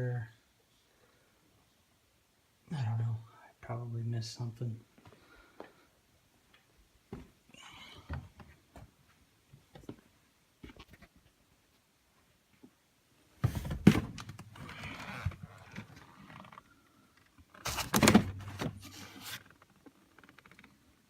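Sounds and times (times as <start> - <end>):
plastic scraping and knocking: 13.4 - 16.5.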